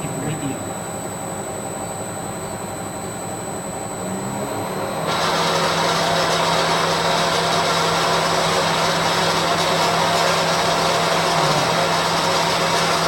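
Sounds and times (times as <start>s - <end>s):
steady low hum: 0.0s - 5.1s, 11.1s - 12.4s
machine motor rushing noise: 11.0s - 12.2s.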